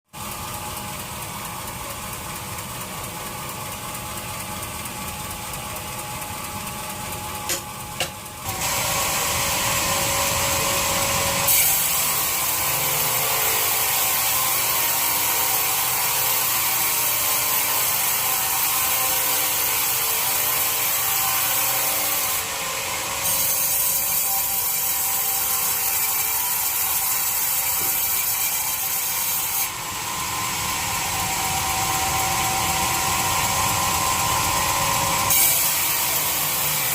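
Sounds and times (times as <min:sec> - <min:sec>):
sharp knocks: 0:07.5 - 0:08.2
bandsaw cutting through a log: 0:07.5 - 0:36.9.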